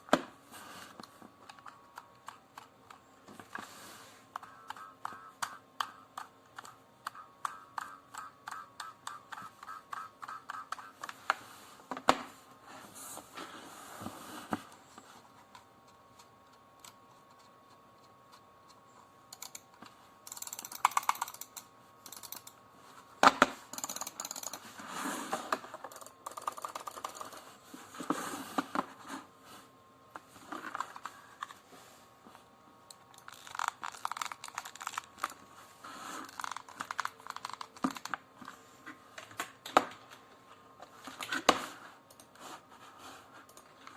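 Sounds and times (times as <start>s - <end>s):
computer mouse buttons clicking: 4.4s - 11.2s, 15.9s - 19.7s, 20.3s - 22.6s, 25.9s - 27.4s
plastic shell crunching: 33.2s - 35.4s.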